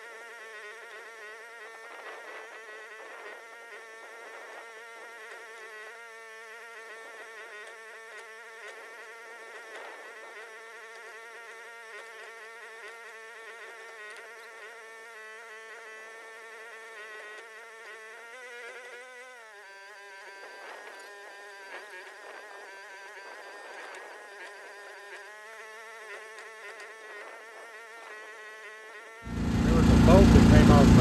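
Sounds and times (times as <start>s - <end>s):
excavator engine buzzing: 29.3s - 31.0s.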